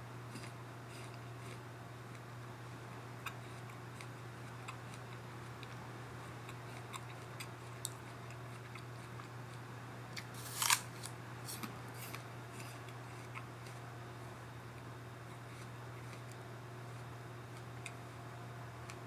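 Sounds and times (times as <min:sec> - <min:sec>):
steady low hum: 0:00.0 - 0:19.0
teeth crunching into apple: 0:10.2 - 0:13.8.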